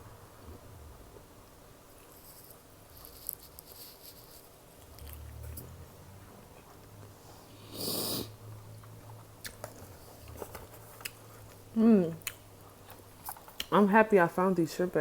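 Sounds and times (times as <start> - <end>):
low steady hum: 0.0 - 15.0
person sniffing: 7.4 - 8.4.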